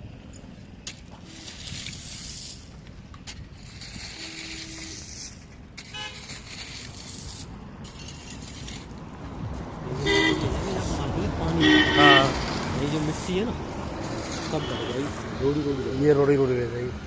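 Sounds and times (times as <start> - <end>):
low traffic rumble: 0.0 - 17.0
vehicle horn toot: 5.9 - 6.3, 9.9 - 10.7, 11.6 - 12.4, 14.5 - 15.2.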